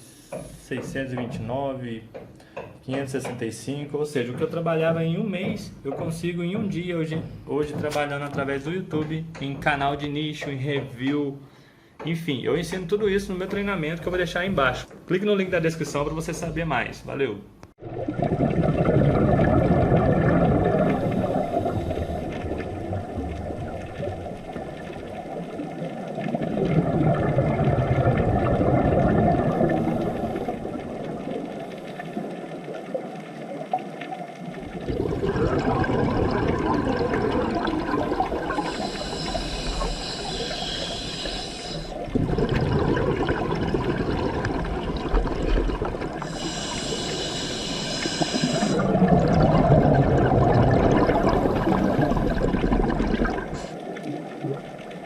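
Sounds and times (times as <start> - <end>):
underwater churning water: 17.8 - 55.0.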